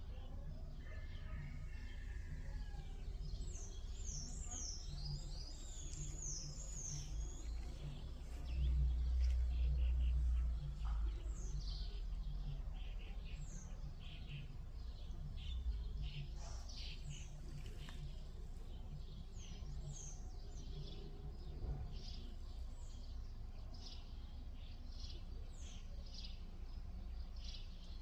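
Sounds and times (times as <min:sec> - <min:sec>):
birds singing: 0:00.0 - 0:28.0
steady low rumble: 0:02.8 - 0:24.7.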